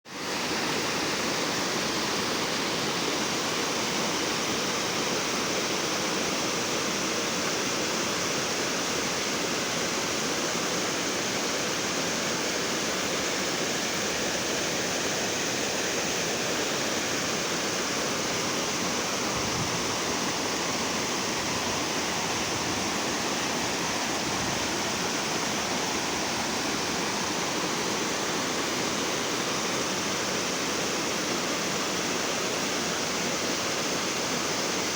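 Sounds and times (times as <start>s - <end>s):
waterfall rushing: 0.2s - 34.9s.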